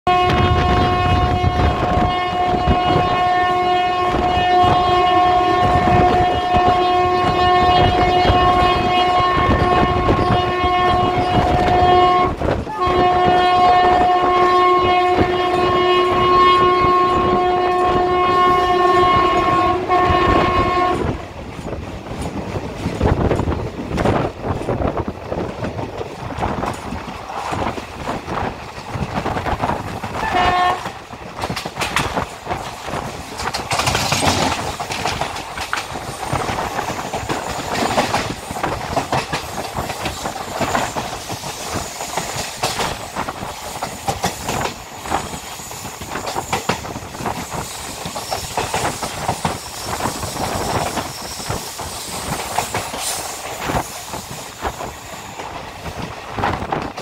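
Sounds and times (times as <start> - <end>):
train horn blaring: 0.1 - 21.2, 30.1 - 31.2
train wheels clattering on rails: 0.1 - 57.0.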